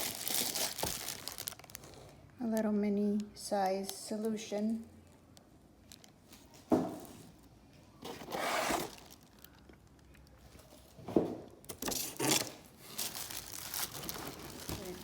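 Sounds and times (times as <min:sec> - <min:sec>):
scraping and rubbing of packaging: 0:08.0 - 0:09.4, 0:11.7 - 0:15.0.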